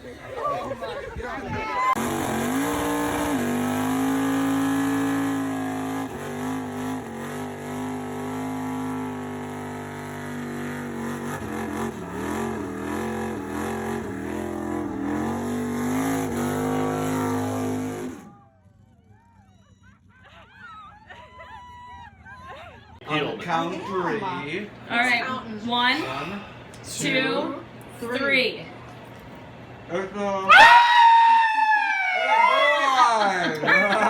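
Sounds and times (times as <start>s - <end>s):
engine revving hard: 2.0s - 18.4s.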